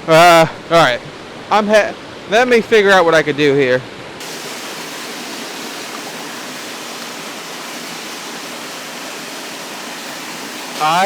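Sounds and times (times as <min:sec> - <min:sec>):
waterfall rushing: 0:04.2 - 0:11.0.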